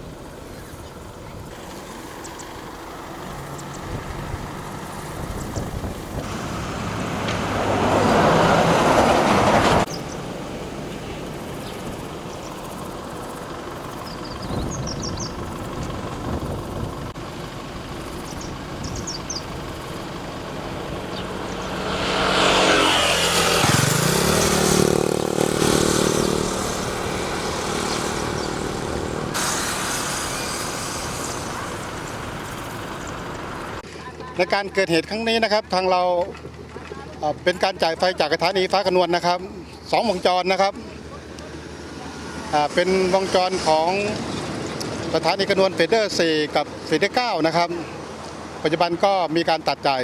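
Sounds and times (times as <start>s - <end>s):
vehicles passing: 0.0s - 50.0s
engine pitch sliding down: 1.4s - 33.8s.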